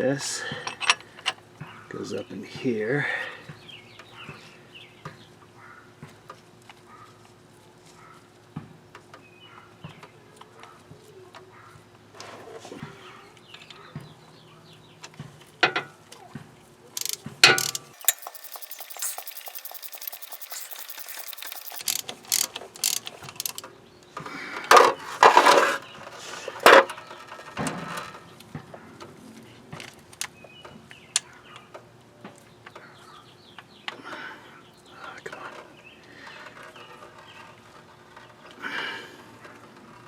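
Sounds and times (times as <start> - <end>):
metallic clinks and tool knocks: 0.6 - 1.4, 17.0 - 23.6
ratchet wrench clicking: 17.0 - 23.6.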